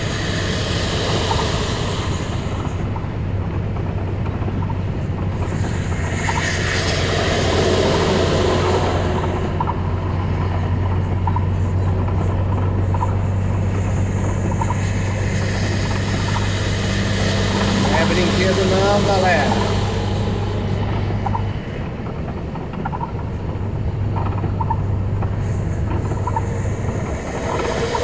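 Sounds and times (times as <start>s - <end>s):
vehicle engine low drone: 0.0s - 28.0s
wet road noise: 0.0s - 28.0s
heavy rain: 12.2s - 22.8s.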